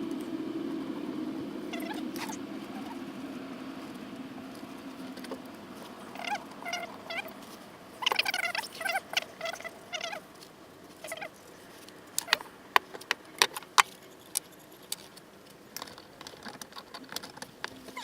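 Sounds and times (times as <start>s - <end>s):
marker squeaking on metal: 1.7s - 3.0s, 5.8s - 7.4s, 8.0s - 10.3s, 11.0s - 11.4s.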